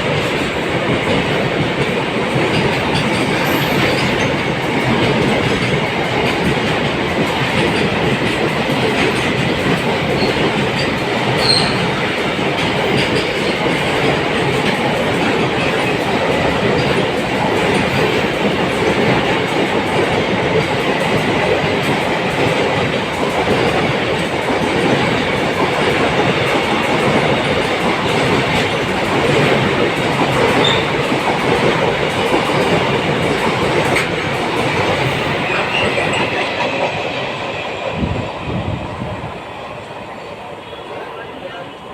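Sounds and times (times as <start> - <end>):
train wheels clattering on rails: 0.0 - 41.2.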